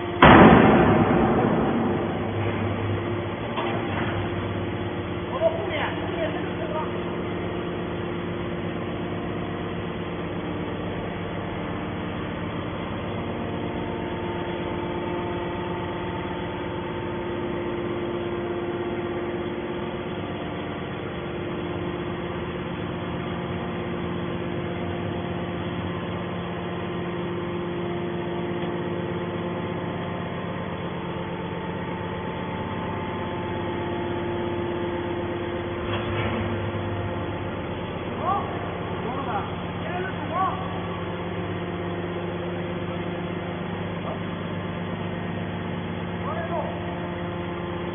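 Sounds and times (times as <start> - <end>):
machinery humming: 0.0 - 47.9
loud knock: 0.2 - 4.2.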